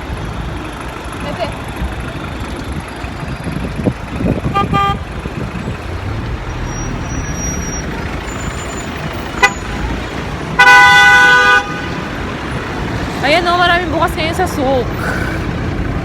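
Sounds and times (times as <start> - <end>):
street traffic: 0.0 - 16.0
vehicle horn honking: 4.4 - 5.0, 9.3 - 12.1.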